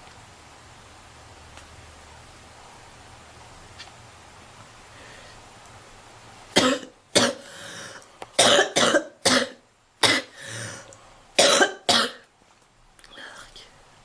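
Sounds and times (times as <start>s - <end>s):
soft breaths drawn in: 4.8s - 5.6s, 7.4s - 8.4s
girl coughing: 6.6s - 7.4s, 8.4s - 10.4s, 11.4s - 12.2s.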